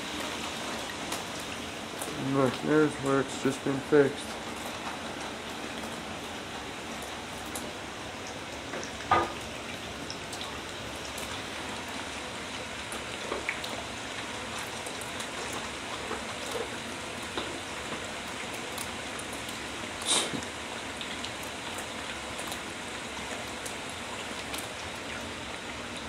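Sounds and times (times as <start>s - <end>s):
patter of falling water: 0.0s - 26.0s
water drips: 7.0s - 26.0s.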